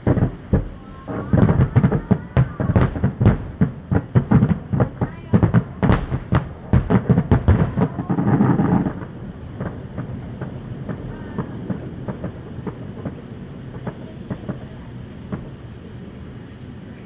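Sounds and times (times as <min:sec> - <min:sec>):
fireworks bangs and crackles: 0:00.0 - 0:17.0
low rumble: 0:05.9 - 0:07.1.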